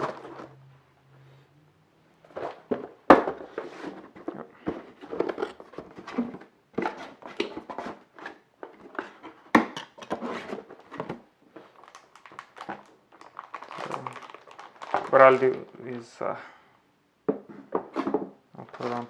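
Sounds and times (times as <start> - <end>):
box rustling and crinkling: 0.0 - 0.6, 2.2 - 15.7.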